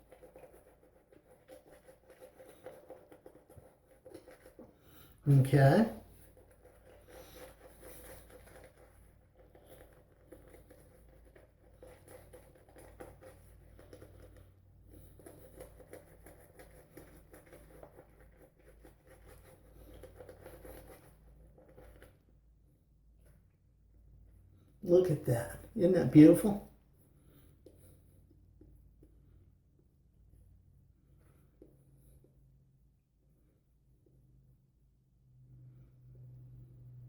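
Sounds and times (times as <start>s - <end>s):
shaving brush scratching lather: 0.0s - 22.3s.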